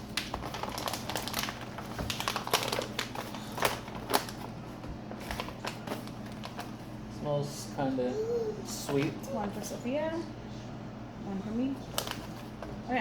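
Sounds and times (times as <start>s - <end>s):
snack wrapper crinkling: 0.0s - 6.8s.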